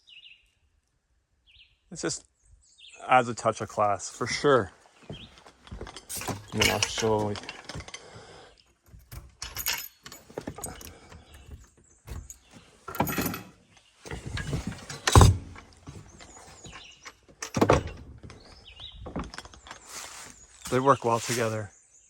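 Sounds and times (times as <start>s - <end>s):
door hardware clicking and rattling: 5.6s - 8.1s, 8.8s - 19.8s
door thudding shut: 14.1s - 16.1s, 17.5s - 18.3s.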